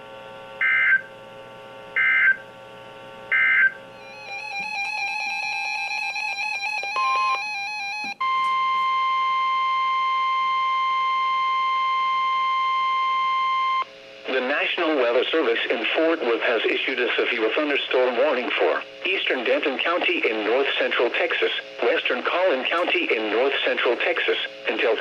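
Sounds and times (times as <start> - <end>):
steady warning alarm tone: 2.0 - 2.5, 3.3 - 13.0.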